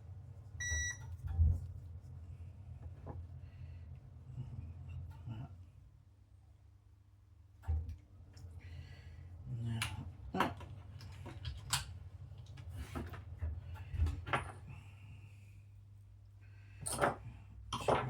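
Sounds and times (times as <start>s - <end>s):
low steady hum: 0.0s - 12.6s.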